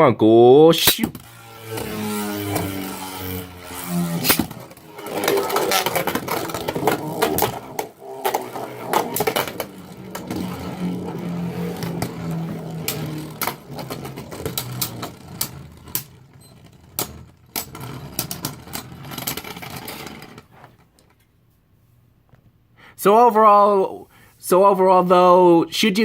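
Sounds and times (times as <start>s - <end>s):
spinning tops whirring: 0.8s - 20.8s.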